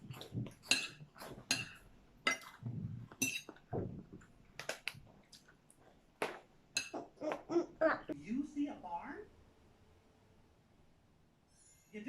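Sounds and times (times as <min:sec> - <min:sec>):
cutlery and dishes clinking: 0:00.2 - 0:04.0, 0:06.8 - 0:07.0.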